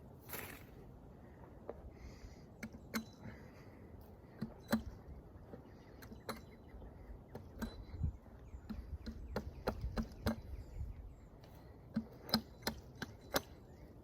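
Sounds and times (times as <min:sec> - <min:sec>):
sharp knocks and clicks: 0:08.6 - 0:10.5.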